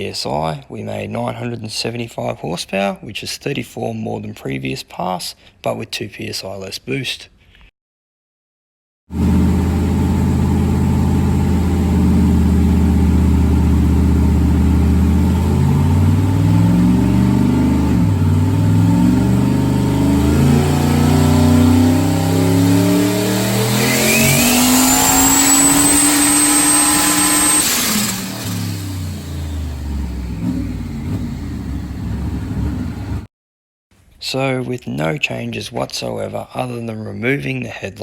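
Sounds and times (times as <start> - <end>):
car engine accelerating on dyno: 9.1 - 33.3
turbo whistle: 23.6 - 28.4.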